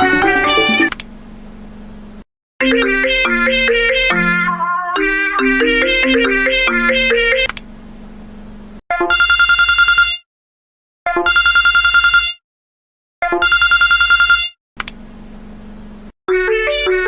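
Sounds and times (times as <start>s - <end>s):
music: 0.0s - 0.9s, 2.6s - 7.1s, 16.3s - 17.0s
telephone ringing: 0.0s - 0.9s, 9.1s - 10.2s, 11.3s - 12.4s, 13.4s - 14.5s.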